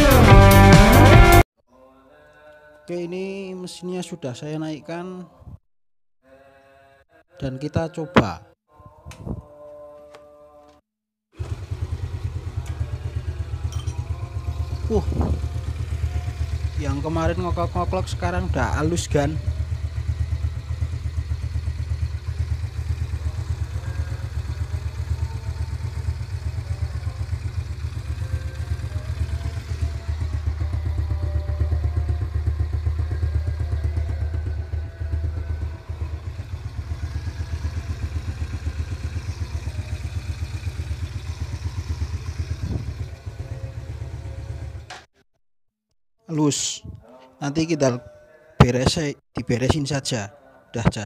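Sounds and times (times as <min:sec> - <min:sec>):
motorcycle engine idling: 0:11.4 - 0:45.0.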